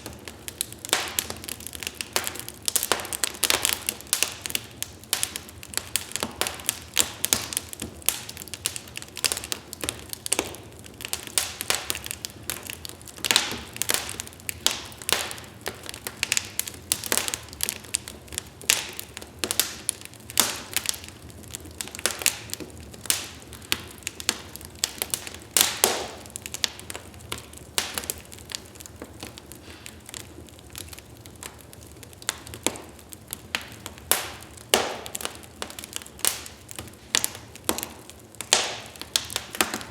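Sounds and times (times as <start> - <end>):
faint fire hiss: 0.0 - 39.9
wood fire crackling and popping: 0.0 - 39.9.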